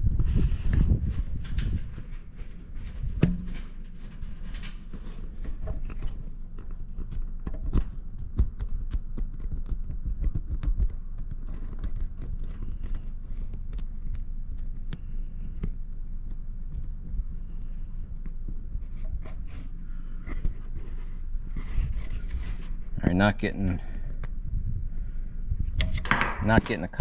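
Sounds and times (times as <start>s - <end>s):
low rumble: 0.0s - 6.5s.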